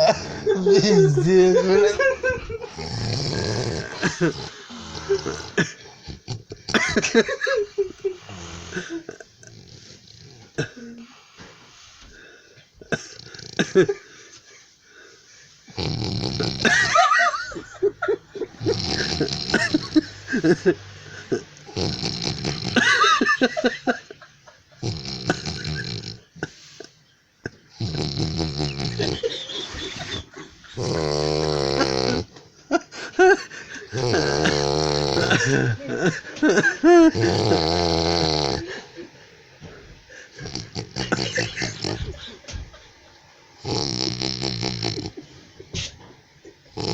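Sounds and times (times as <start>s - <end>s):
person snoring: 0.0s - 11.9s, 13.0s - 14.0s, 15.7s - 17.8s, 18.4s - 23.8s, 24.8s - 26.3s, 27.7s - 32.3s, 33.0s - 42.5s, 43.6s - 45.2s, 46.7s - 46.9s
short snorts: 2.6s - 12.3s, 15.7s - 16.9s, 18.6s - 22.8s, 24.8s - 27.0s, 27.8s - 32.4s, 33.7s - 35.8s, 37.1s - 38.9s, 39.6s - 42.5s, 43.6s - 46.1s, 46.7s - 46.9s.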